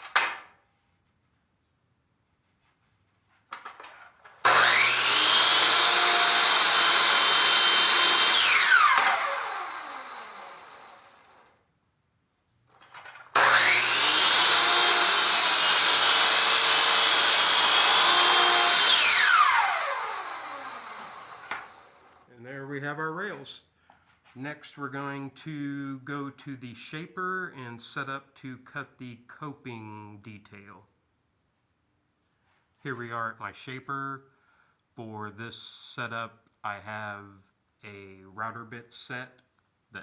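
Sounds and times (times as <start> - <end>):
power saw cutting wood: 4.4 - 11.5, 13.3 - 22.3
saw blade winding down whine: 4.4 - 11.5, 13.4 - 22.2.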